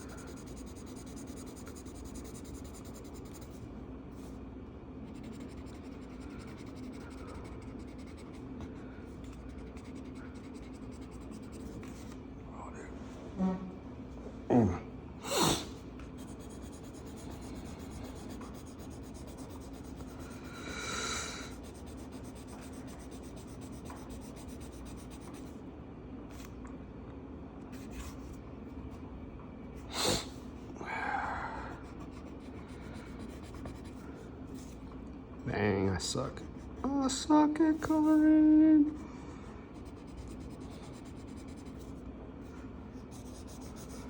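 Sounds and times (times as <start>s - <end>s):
marker scratching on paper: 0.0s - 4.4s, 5.0s - 12.2s, 16.0s - 20.4s, 21.4s - 25.6s, 31.8s - 34.8s, 39.7s - 42.0s, 43.0s - 44.0s
steady low hum: 0.0s - 44.0s.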